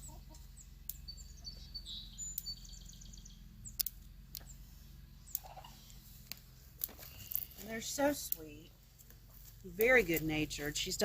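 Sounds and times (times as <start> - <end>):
faint songbird chirping: 0.0 - 11.0
sharp clicks: 3.7 - 4.5.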